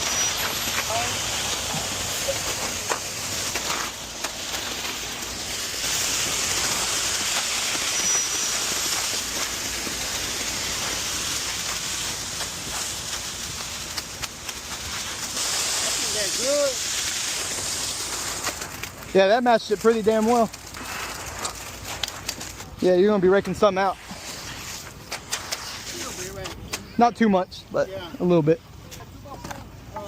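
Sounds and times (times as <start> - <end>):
wet concrete pouring from chute: 0.0 - 26.5.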